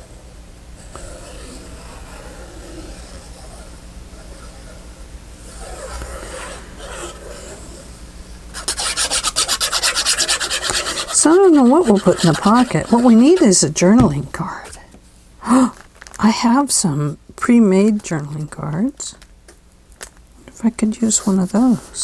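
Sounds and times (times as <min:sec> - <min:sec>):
fast rubbing strokes on paper: 0:01.0 - 0:07.8, 0:08.5 - 0:13.8
paper and card being handled: 0:08.6 - 0:14.3.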